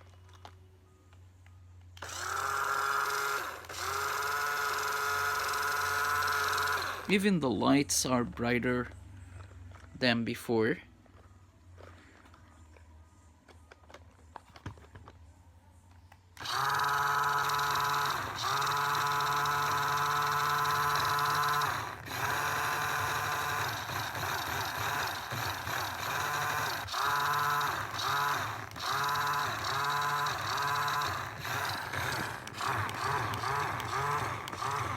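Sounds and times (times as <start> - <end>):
toy car electric motor whining: 2.0 - 7.2, 16.3 - 34.9.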